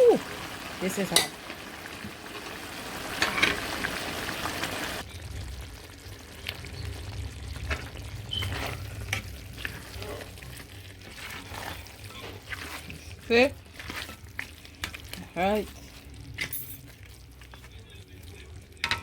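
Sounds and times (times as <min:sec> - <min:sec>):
food sizzling in a pot: 0:00.0 - 0:19.0
spoon stirring in a pot: 0:07.5 - 0:19.0.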